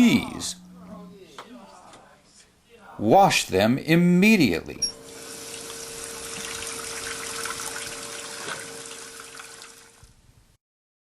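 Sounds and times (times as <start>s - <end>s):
faint steady hum: 0.0s - 10.6s
tap water running into sink: 5.0s - 10.1s.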